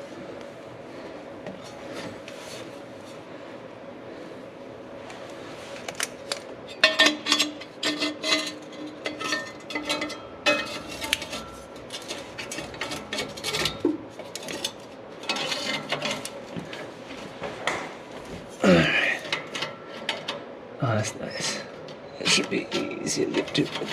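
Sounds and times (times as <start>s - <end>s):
metal tools clinking and clanking: 6.7s - 16.3s.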